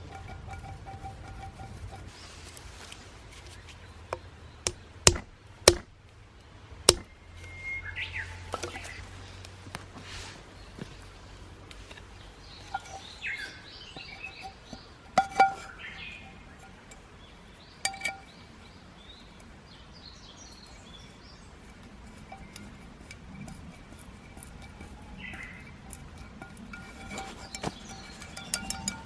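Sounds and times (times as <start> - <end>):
woodpecker whistled notes: 7.0 - 9.0.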